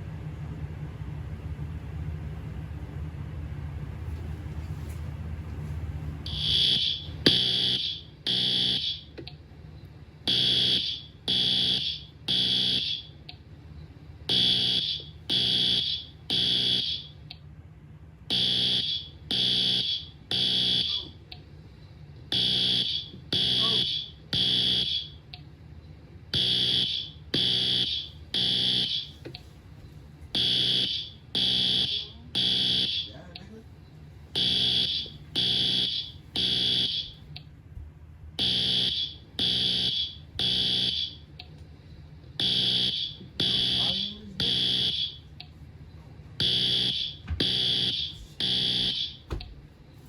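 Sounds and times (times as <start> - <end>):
fire alarm beeping: 6.3 - 9.2, 10.2 - 13.4, 14.3 - 17.3, 18.3 - 21.4, 22.3 - 25.4, 26.3 - 29.5, 30.4 - 33.5, 34.3 - 37.4, 38.4 - 41.5, 42.3 - 45.6, 46.4 - 49.6.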